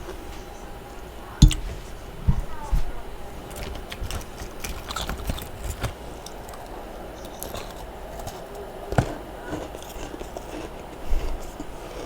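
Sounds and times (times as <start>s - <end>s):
frost being crunched and chewed: 3.4s - 12.0s.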